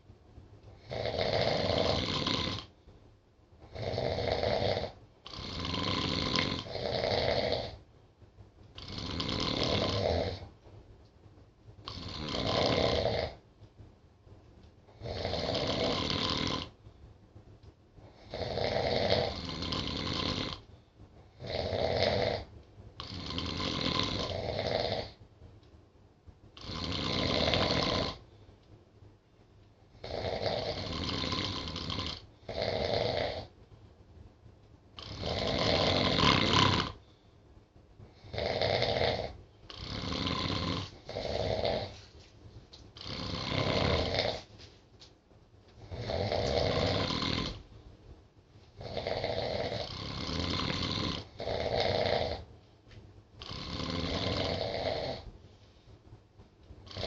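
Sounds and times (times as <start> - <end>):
people snoring: 0.8 - 2.7, 3.7 - 7.8, 8.8 - 10.5, 11.9 - 13.4, 15.0 - 16.7, 18.2 - 20.6, 21.4 - 25.2, 26.6 - 28.2, 30.0 - 33.5, 35.0 - 37.0, 38.2 - 42.0, 43.0 - 44.5, 45.8 - 47.6, 48.8 - 52.5, 53.4 - 55.3.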